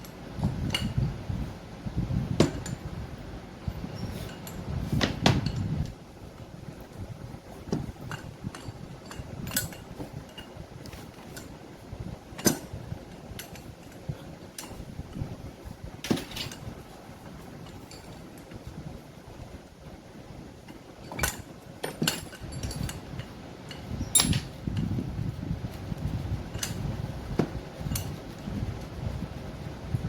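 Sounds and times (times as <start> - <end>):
metal tools clinking and knocking: 8.1 - 10.5, 21.0 - 23.1, 23.7 - 24.6.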